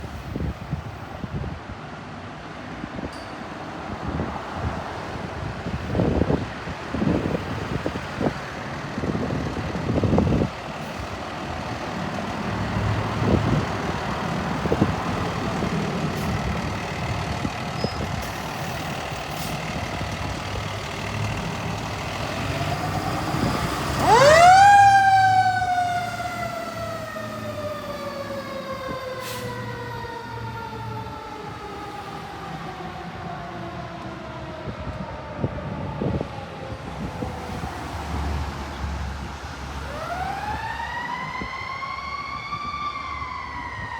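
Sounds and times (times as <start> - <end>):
fire engine motor rumbling: 0.0 - 3.1, 3.9 - 43.9
mechanical siren wailing: 22.3 - 37.2, 39.9 - 43.9.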